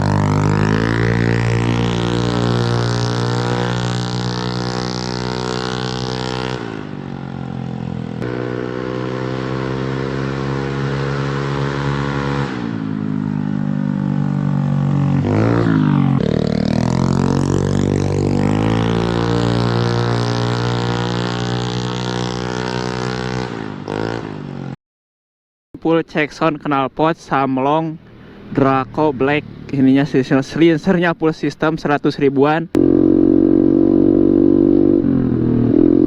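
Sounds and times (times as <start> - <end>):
motorcycle engine revving: 0.0 - 24.8, 32.8 - 36.0.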